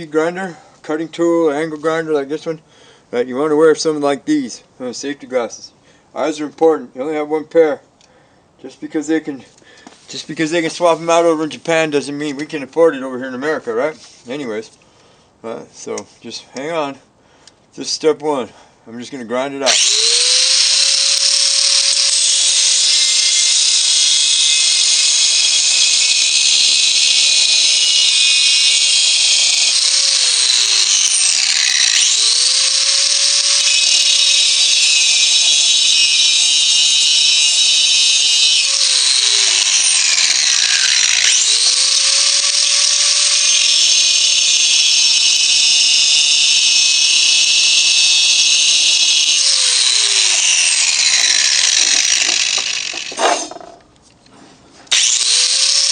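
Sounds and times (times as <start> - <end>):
angle grinder grinding steel: 19.6 - 53.8, 54.9 - 55.9.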